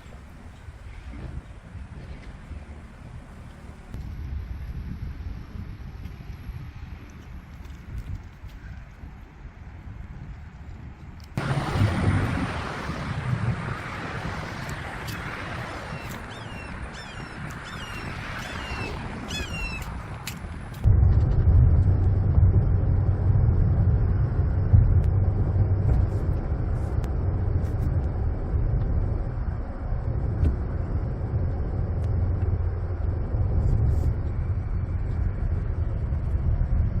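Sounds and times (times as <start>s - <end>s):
hurricane wind buffeting microphone: 0.0s - 37.0s
rain: 11.4s - 17.0s.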